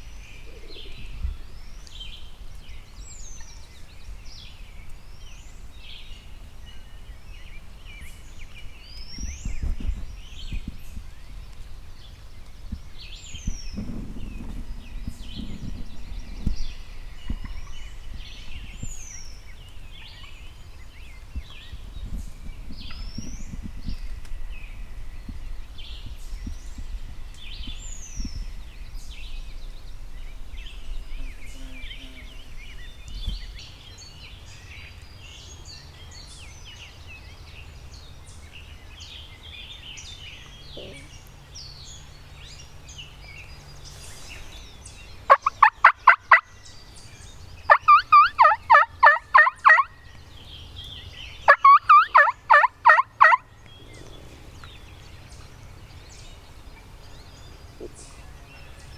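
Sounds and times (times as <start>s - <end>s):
songbirds chirping: 0.0s - 58.9s
turkey gobbling: 45.3s - 46.5s, 47.7s - 49.9s, 51.5s - 53.4s.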